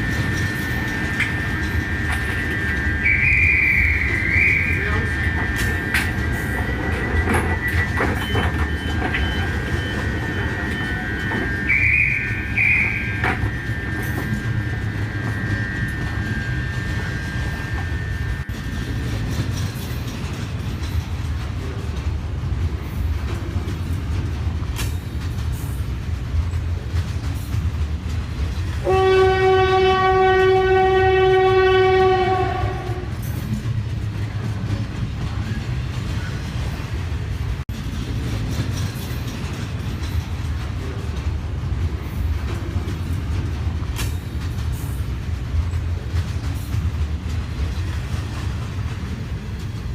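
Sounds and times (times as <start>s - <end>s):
train wheel clicks: 0.0s - 28.9s, 32.7s - 49.9s
train rumbling on rails: 0.0s - 49.9s
train horn: 1.7s - 6.1s, 10.7s - 18.5s, 28.8s - 33.2s.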